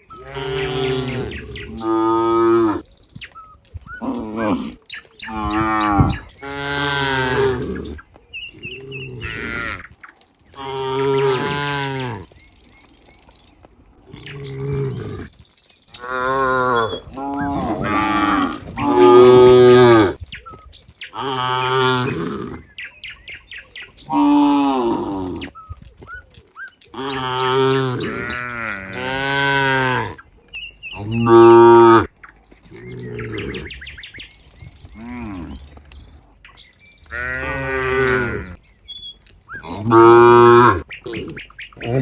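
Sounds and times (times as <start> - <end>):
cows mooing: 0.0 - 2.8, 4.0 - 10.0, 10.6 - 12.3, 16.0 - 20.2, 21.2 - 22.8, 24.0 - 25.5, 27.0 - 30.3, 30.9 - 32.1, 32.7 - 34.1, 34.8 - 36.2, 37.0 - 38.6, 39.6 - 42.0.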